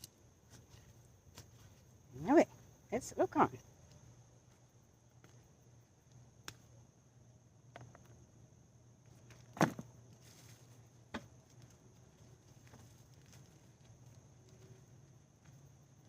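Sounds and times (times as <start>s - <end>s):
high insect drone: 0.0s - 16.0s
digging knocks in soil: 9.2s - 11.4s.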